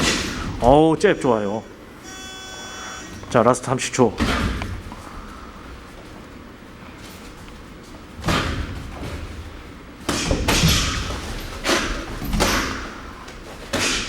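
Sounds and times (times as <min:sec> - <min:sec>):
boxing gloves punching thuds: 0:10.1 - 0:13.0.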